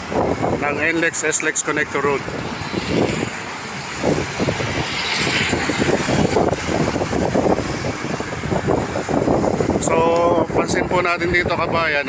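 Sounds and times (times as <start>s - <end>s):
road traffic: 0.0s - 12.0s
wind buffeting microphone: 0.0s - 12.0s
vehicle passing: 1.6s - 9.8s.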